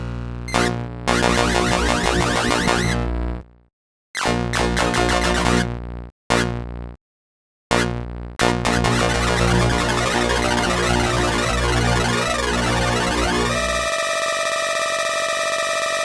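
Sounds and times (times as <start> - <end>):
electronic synthesizer music: 0.5 - 3.0, 8.7 - 14.5.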